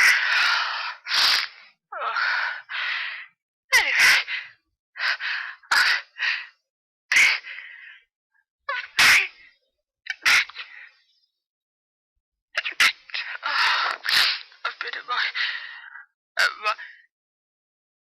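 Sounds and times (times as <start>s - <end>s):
gasping in-breaths: 0.0s - 3.4s, 4.2s - 8.1s
person sneezing: 9.0s - 9.4s.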